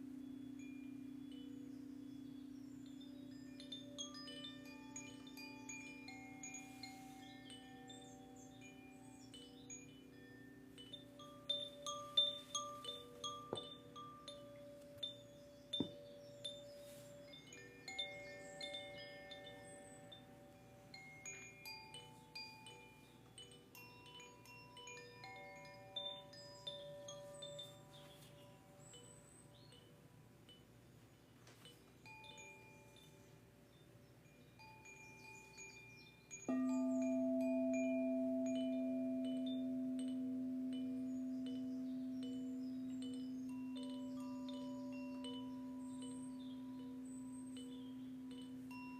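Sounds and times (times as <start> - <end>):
meditation chimes ringing: 0.0 - 48.9
high chime strikes: 36.4 - 48.9.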